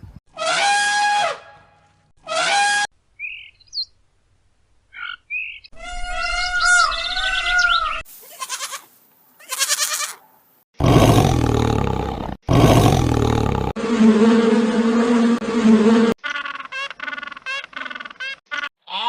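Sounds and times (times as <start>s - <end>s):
deep animal roars: 10.8s - 16.2s.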